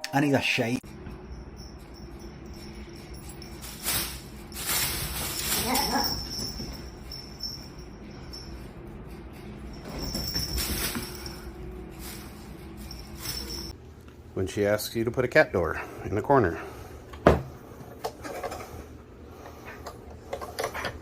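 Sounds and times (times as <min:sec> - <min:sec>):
rustling: 0:03.1 - 0:07.6.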